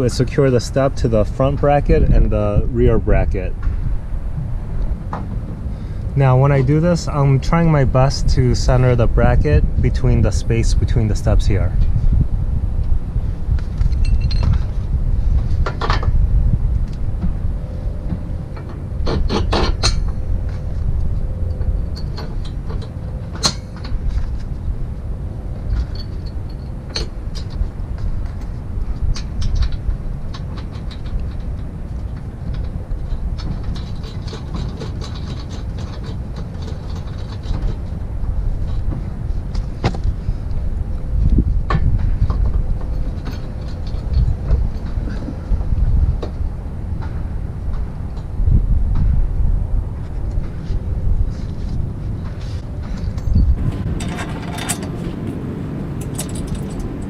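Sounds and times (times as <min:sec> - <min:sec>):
steady low rumble: 0:00.0 - 0:57.0
metal clinks and clanks: 0:13.8 - 0:14.7, 0:19.0 - 0:20.2, 0:25.7 - 0:27.6, 0:53.0 - 0:55.4, 0:56.0 - 0:57.0.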